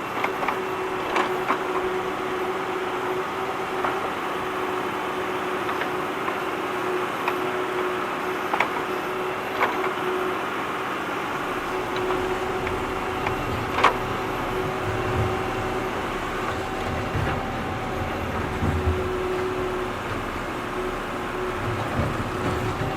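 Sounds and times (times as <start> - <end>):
tractor engine running: 11.2 - 22.9
sharp knocks and clanks: 11.3 - 22.9
deep rumble: 11.4 - 22.9.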